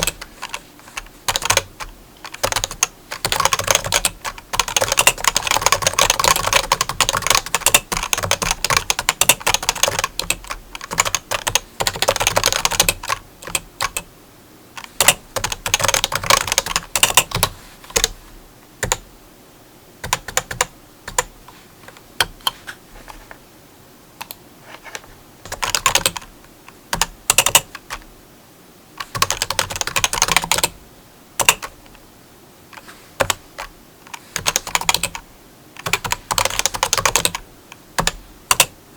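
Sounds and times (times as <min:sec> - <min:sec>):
typing on a keyboard: 0:00.0 - 0:14.1, 0:14.8 - 0:18.2, 0:18.8 - 0:19.0, 0:20.0 - 0:21.3, 0:25.5 - 0:26.3, 0:27.0 - 0:28.0, 0:29.0 - 0:30.8, 0:31.4 - 0:31.7, 0:33.2 - 0:35.2, 0:35.8 - 0:37.4, 0:38.0 - 0:38.7.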